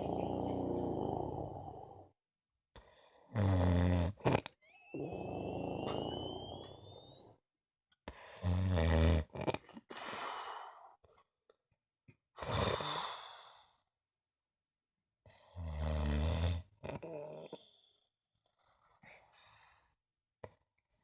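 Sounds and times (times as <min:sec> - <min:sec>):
deep heavy snoring: 0:00.0 - 0:02.2, 0:02.9 - 0:04.4, 0:05.0 - 0:07.2, 0:08.2 - 0:09.6, 0:15.3 - 0:17.7
breathy exhales: 0:05.0 - 0:07.3.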